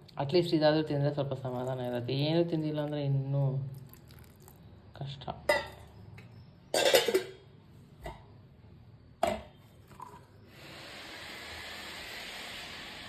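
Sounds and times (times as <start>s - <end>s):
steady hiss: 10.4s - 13.0s.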